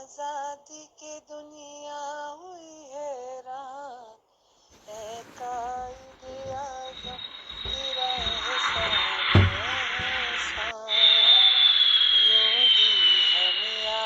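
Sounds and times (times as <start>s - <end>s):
rough noise: 4.8s - 10.7s.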